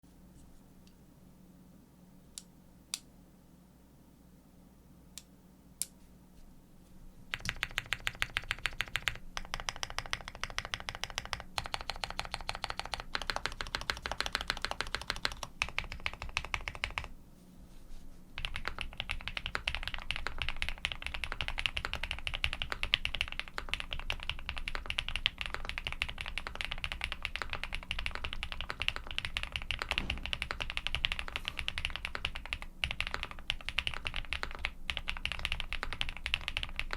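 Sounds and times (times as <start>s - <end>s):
mechanical keyboard typing: 7.3s - 17.1s, 18.4s - 36.9s.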